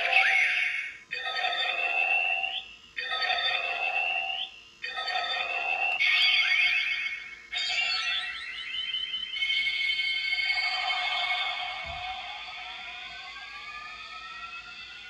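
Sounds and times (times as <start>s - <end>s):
toy electronic chiming sound effect: 0.0s - 11.8s.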